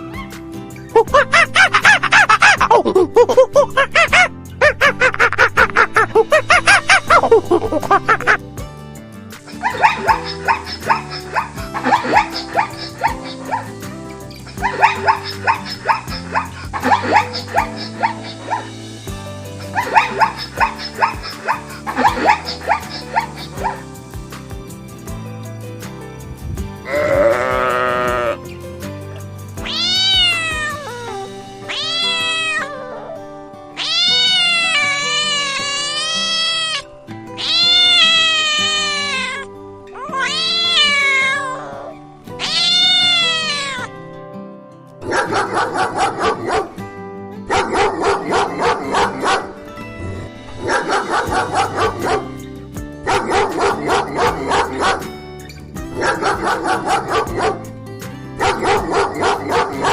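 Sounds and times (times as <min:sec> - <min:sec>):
background music: 0:00.0 - 0:59.9
dog barking rapid yaps: 0:09.6 - 0:13.7, 0:14.6 - 0:18.7, 0:19.7 - 0:23.8, 0:45.1 - 0:46.8, 0:47.5 - 0:49.6, 0:50.6 - 0:52.3, 0:53.0 - 0:55.1, 0:56.0 - 0:57.7, 0:58.4 - 0:59.9
cat meowing: 0:26.9 - 0:28.4, 0:29.6 - 0:33.2, 0:33.8 - 0:44.0.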